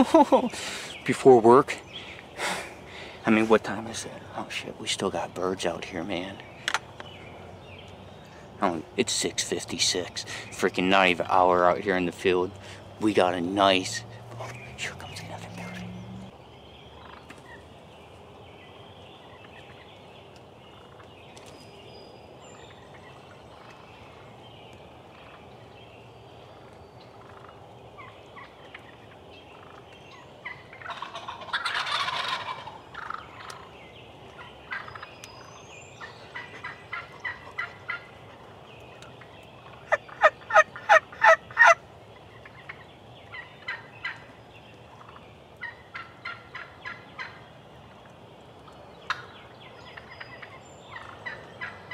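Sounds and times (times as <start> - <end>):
turkey gobbling: 17.0 - 17.6, 27.1 - 33.7, 34.3 - 35.1, 36.0 - 38.5, 39.2 - 44.3, 45.0 - 47.4, 49.1 - 51.9
turkey yelping: 27.2 - 33.7, 34.4 - 35.1, 36.4 - 38.1, 39.6 - 41.8, 43.3 - 44.2, 45.1 - 47.4, 50.0 - 51.9.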